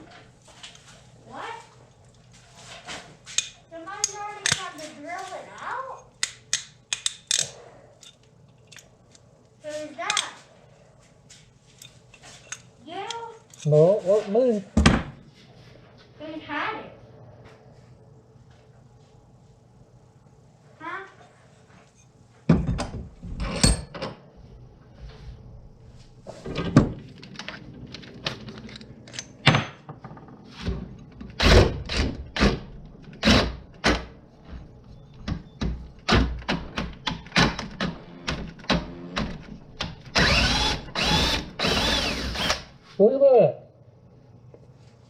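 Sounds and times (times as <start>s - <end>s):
electric drill running: 40.1s - 42.7s.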